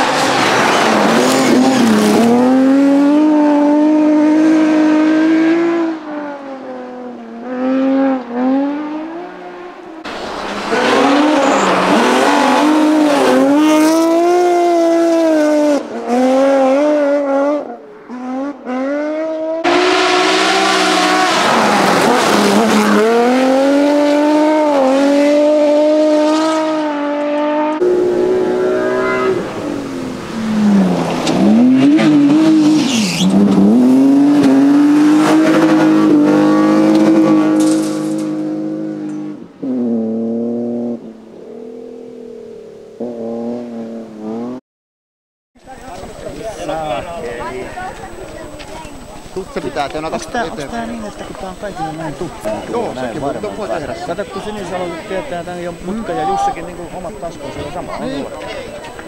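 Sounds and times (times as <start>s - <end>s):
rally car engine revving: 0.0s - 42.2s, 42.9s - 44.6s.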